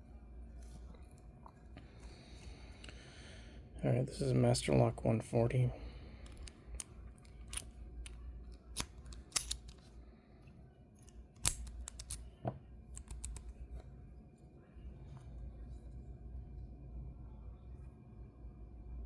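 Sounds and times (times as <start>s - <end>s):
lock picks clicking and scraping: 6.2s - 9.9s, 11.0s - 13.6s.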